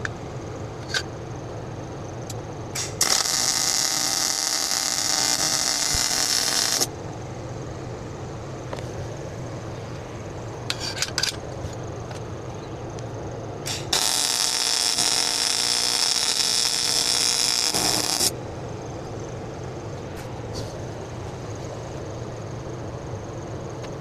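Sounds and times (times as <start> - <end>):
steady low hum: 0.0 - 24.0
welding arc hissing: 2.7 - 7.0, 13.6 - 18.4.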